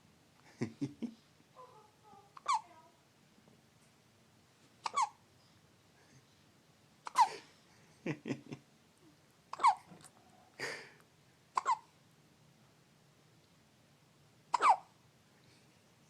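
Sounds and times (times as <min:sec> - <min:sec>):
baby hiccuping: 0:02.4 - 0:02.6, 0:04.8 - 0:05.2, 0:07.0 - 0:07.3, 0:09.5 - 0:09.9, 0:11.6 - 0:11.9, 0:14.5 - 0:14.9.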